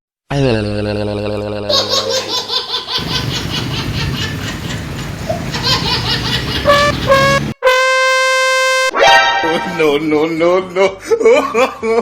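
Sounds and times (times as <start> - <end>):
people laughing: 1.7 - 7.4, 9.4 - 12.0
bus horn toots: 6.4 - 9.2.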